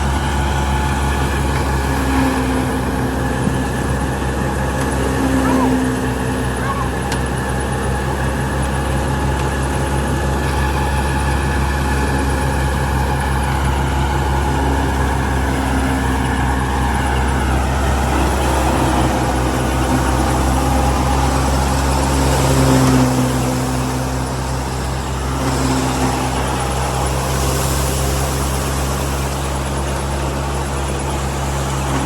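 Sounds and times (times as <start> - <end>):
diesel engine droning: 0.0 - 32.0.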